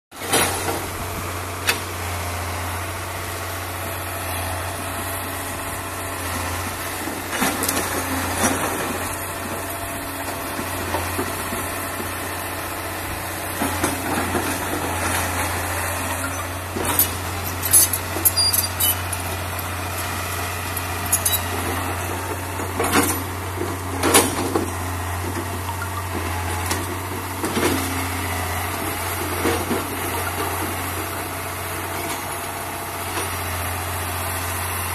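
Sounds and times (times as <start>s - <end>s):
excavator diesel engine running: 0.2s - 34.9s
sharp metal clanks and knocks: 16.2s - 19.8s, 20.7s - 22.2s.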